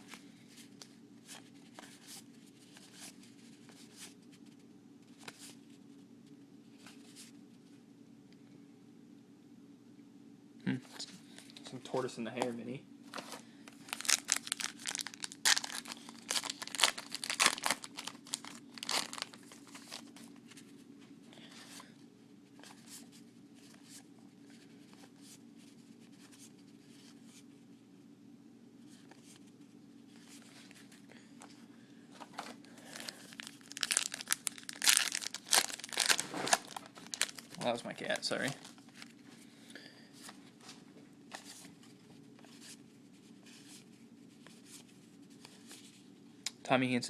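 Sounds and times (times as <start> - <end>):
wrappers crinkling and tearing: 13.7 - 20.2, 32.4 - 39.2.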